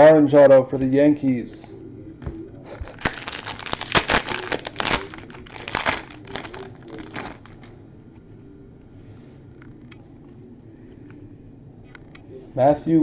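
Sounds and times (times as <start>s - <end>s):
wrapper crinkling: 2.8s - 7.7s.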